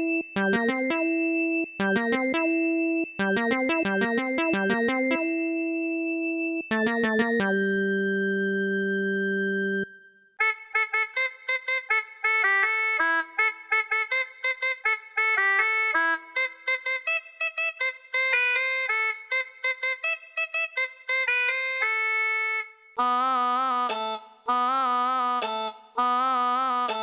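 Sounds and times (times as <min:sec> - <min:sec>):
electronic keyboard melody: 0:00.0 - 0:10.0, 0:23.0 - 0:27.0.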